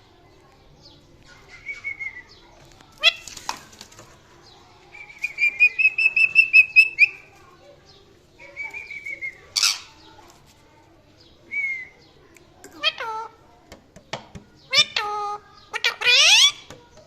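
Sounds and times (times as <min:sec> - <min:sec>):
parrot chattering and screeching: 0:09.6 - 0:10.0, 0:12.8 - 0:13.4, 0:14.7 - 0:16.7.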